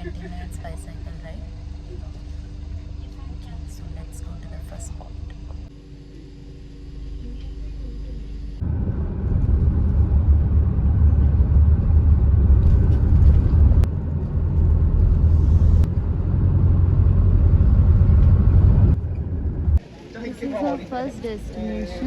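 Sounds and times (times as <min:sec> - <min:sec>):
vehicle rumble from on board: 0:07.0 - 0:19.8.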